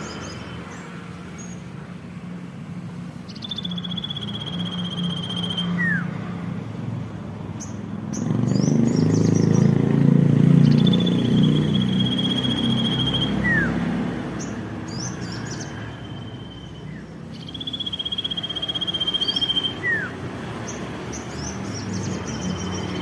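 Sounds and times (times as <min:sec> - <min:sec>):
quick high bird chirps: 0:03.3 - 0:06.0, 0:10.6 - 0:13.8, 0:14.4 - 0:23.0
bird buzzy trill: 0:03.3 - 0:06.1, 0:10.6 - 0:13.8, 0:15.4 - 0:20.3
bird downward whistle: 0:03.4 - 0:06.0, 0:10.8 - 0:13.7, 0:17.4 - 0:20.1.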